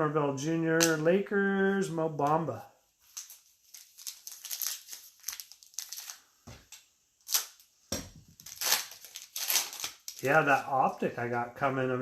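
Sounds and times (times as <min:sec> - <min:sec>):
card pack wrappers tearing: 0:03.1 - 0:06.3, 0:07.2 - 0:07.7, 0:08.3 - 0:11.0.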